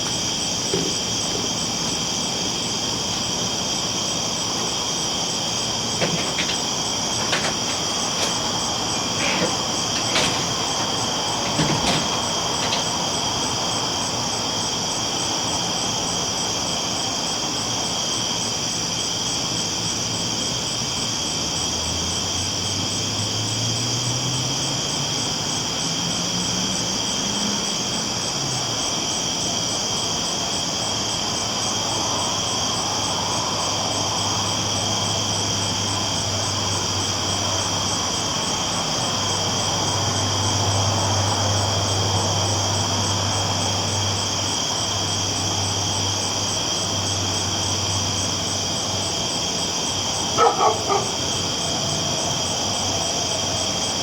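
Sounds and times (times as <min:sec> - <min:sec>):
train rumbling on tracks: 0:04.6 - 0:14.3.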